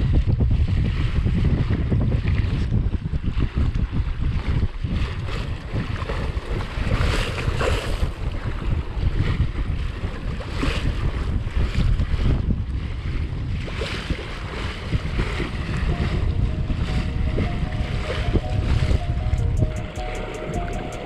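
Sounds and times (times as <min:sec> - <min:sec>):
water washing against hull: 0:00.0 - 0:21.0
wind buffeting microphone: 0:00.0 - 0:21.0.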